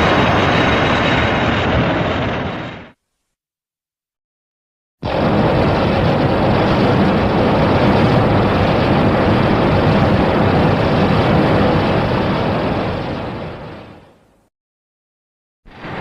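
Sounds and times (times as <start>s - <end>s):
monster rushing rumble: 0.0s - 3.0s, 5.0s - 14.0s.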